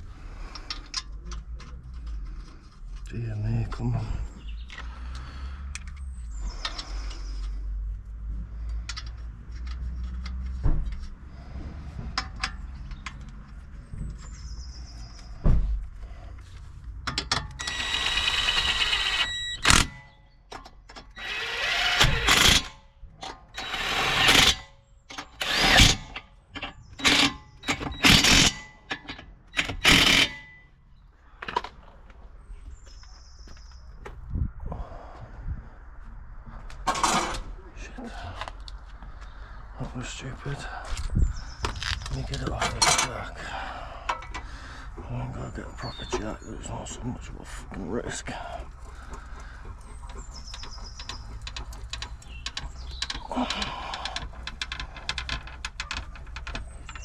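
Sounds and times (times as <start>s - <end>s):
metal clicks and knocks: 16.9s - 17.6s, 50.4s - 57.0s
power tool bursts: 17.6s - 20.0s, 21.2s - 22.8s, 23.6s - 26.2s, 27.0s - 28.6s, 29.6s - 30.5s.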